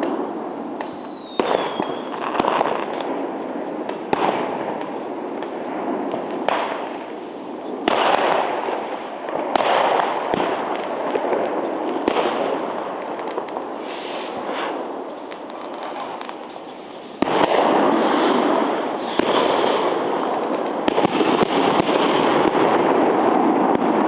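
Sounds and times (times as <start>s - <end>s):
fireworks bangs: 0.0s - 24.0s
fireworks crackling: 0.0s - 24.0s.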